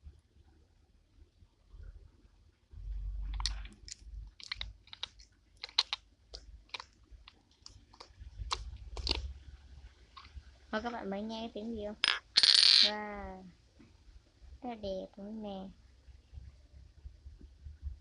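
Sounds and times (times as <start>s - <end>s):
slime crackling and popping: 3.2s - 9.3s.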